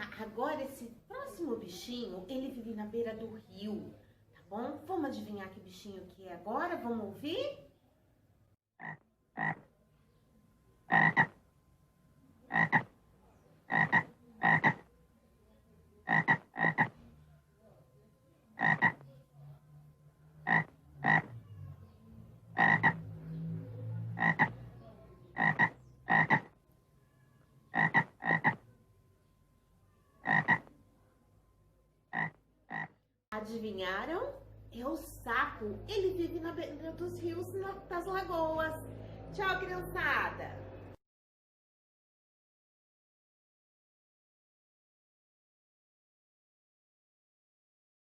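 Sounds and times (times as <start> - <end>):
frog croaking: 8.8 - 9.8, 10.8 - 11.4, 12.5 - 13.0, 13.6 - 14.9, 16.0 - 17.1, 18.6 - 19.1, 20.4 - 21.5, 22.5 - 23.4, 24.0 - 24.8, 25.4 - 26.6, 27.7 - 28.7, 30.0 - 30.8, 32.1 - 33.0.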